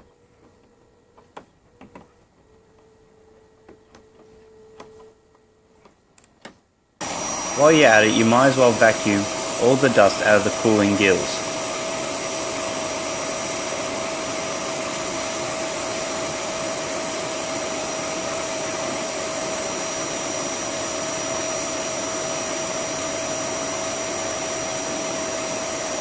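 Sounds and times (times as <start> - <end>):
vacuum cleaner running: 7.0 - 26.0.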